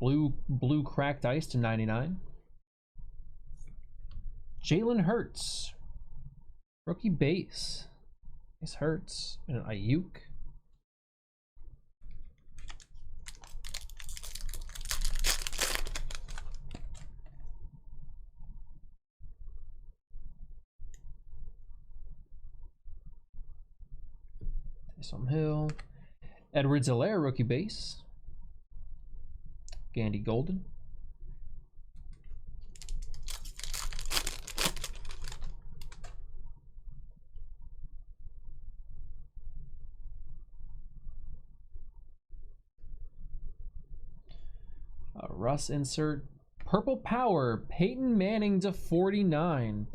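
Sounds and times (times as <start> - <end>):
card pack wrapper crinkling: 12.6 - 17.1, 32.7 - 36.2.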